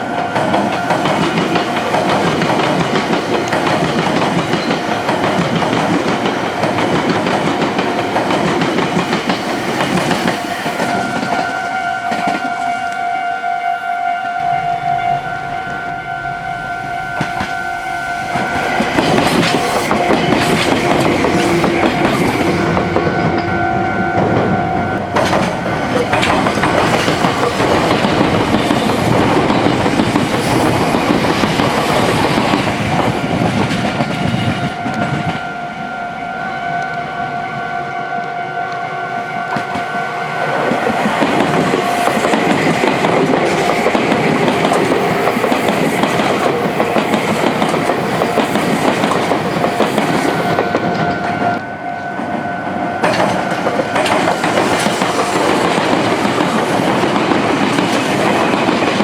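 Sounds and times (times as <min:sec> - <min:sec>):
train wheels clattering over rail joints: 0:00.2 - 0:11.5, 0:18.4 - 0:35.4, 0:40.6 - 0:51.6, 0:53.0 - 0:59.0
steady high tone: 0:10.3 - 0:30.0, 0:32.2 - 0:44.0.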